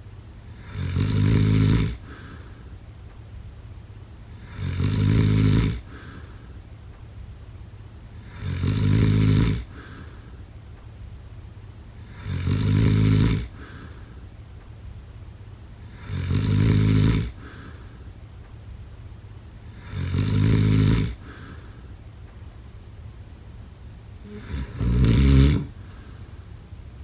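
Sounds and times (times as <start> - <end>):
person snoring: 0.6 - 2.5, 4.4 - 6.4, 19.8 - 21.7, 24.2 - 26.4
faint breath out: 2.0 - 2.8, 5.9 - 6.6, 9.7 - 10.5, 13.5 - 14.3, 17.4 - 18.1, 21.2 - 22.0, 24.2 - 24.9, 25.6 - 26.6.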